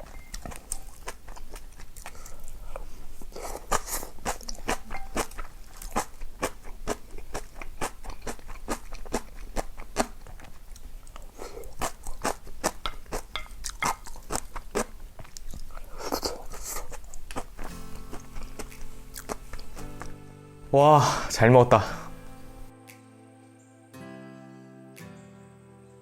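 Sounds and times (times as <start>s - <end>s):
crunchy chewing: 0.0s - 20.2s.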